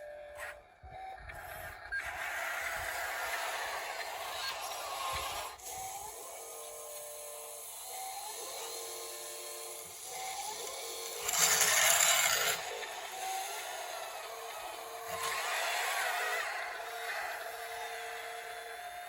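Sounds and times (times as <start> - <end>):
small electric motors whining: 0.0 - 19.0.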